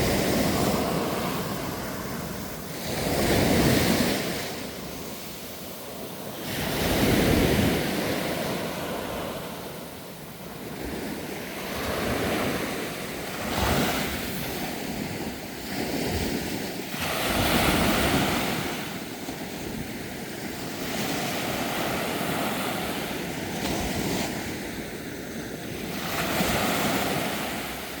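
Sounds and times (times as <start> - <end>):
sea waves breaking on shore: 0.0 - 28.0
wind on microphone: 0.0 - 28.0.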